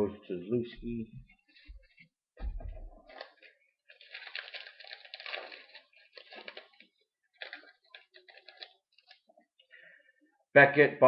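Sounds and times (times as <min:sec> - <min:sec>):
cards rustling while flipped: 0:03.0 - 0:09.4.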